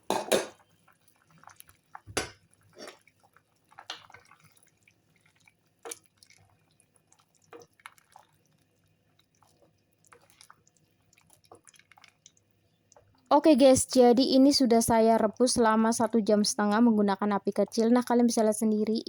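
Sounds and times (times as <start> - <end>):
soup bubbling in a pot: 0.0 - 13.3.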